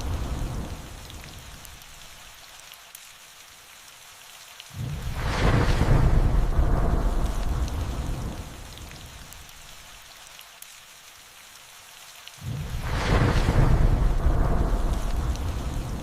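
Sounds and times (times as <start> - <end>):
thunder rumbling: 0.0 - 1.6, 4.8 - 9.4, 12.4 - 16.0
rain falling: 0.0 - 16.0
thunderclap: 4.8 - 9.2, 12.4 - 16.0.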